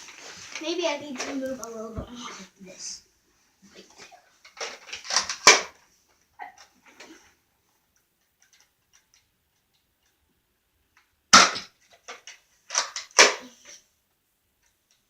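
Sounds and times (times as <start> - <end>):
clicks and clatter: 4.4 - 7.2, 7.9 - 10.2, 10.9 - 13.8.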